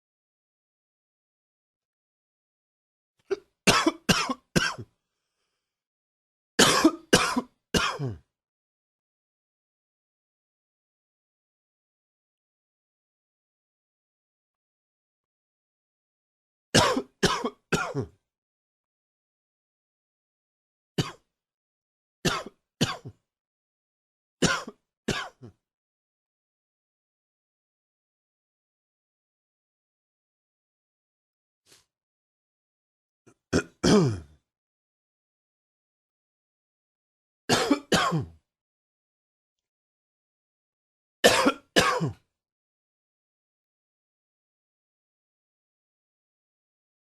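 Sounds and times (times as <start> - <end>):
man coughing hard: 3.3 - 4.8, 6.6 - 8.2, 16.8 - 18.1, 22.3 - 23.1, 24.4 - 25.5, 33.6 - 34.3, 37.5 - 38.3, 41.2 - 42.2.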